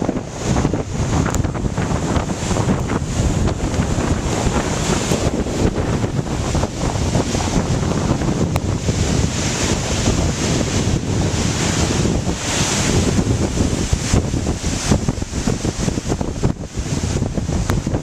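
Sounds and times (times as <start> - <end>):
strong wind buffeting microphone: 0.0 - 18.0
waves washing on shore: 0.0 - 18.0.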